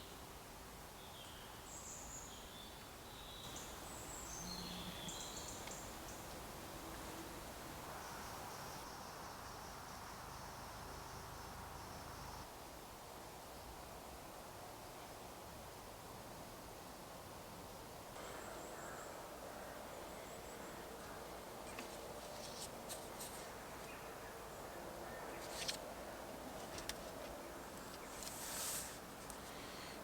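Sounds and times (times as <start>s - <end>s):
brief rustle: 25.4s - 25.8s, 26.6s - 29.6s.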